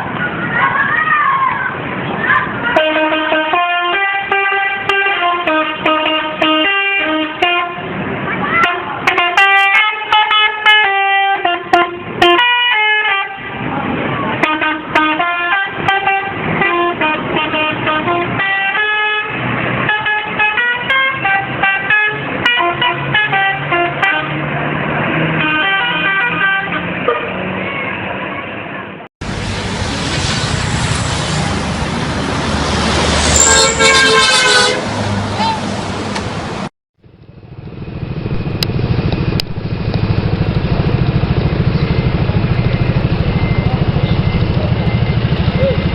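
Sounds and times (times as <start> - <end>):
traffic noise: 0.0 - 45.9
bus multi-tone horn melody: 2.6 - 27.6, 32.3 - 36.1.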